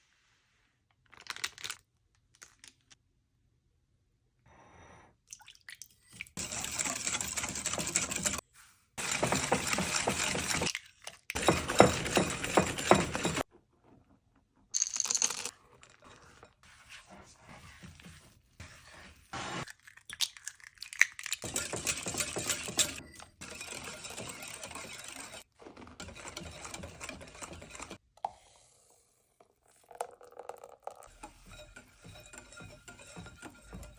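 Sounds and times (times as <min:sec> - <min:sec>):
scraping and stirring batter: 0:06.0 - 0:14.7, 0:15.5 - 0:28.1, 0:30.6 - 0:33.9.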